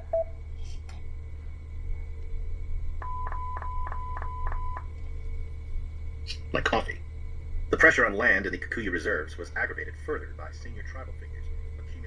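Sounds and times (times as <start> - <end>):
electronic beeps: 0.0 - 0.3, 3.0 - 5.0
low steady hum: 0.0 - 12.0
steady tone: 0.0 - 12.0.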